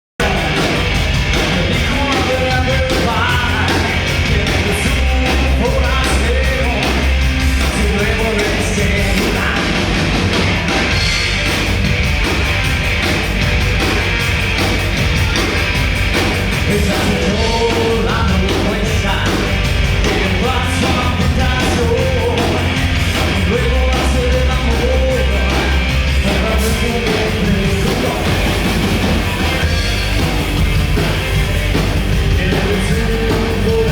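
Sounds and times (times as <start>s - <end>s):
person singing lead vocal: 0.2s - 10.0s, 16.6s - 28.8s, 32.2s - 33.9s
rock band playing live: 0.2s - 33.9s.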